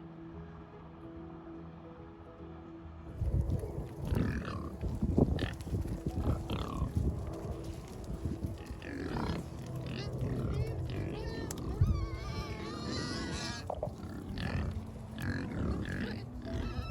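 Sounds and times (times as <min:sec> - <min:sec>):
pigs grunting: 0:03.7 - 0:16.9
pigs' higher calls: 0:03.9 - 0:16.9.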